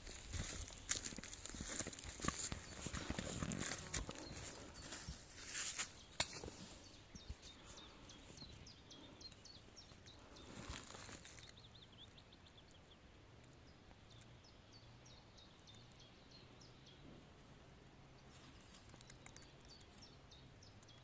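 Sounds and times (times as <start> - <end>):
small birds chirping: 0.0 - 21.0
brief rustle: 0.6 - 7.4.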